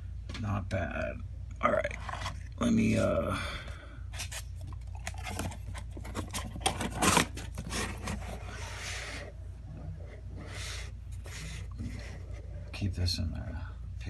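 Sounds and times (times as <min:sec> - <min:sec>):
cards rubbing and sliding: 0:04.2 - 0:09.4, 0:10.0 - 0:12.6.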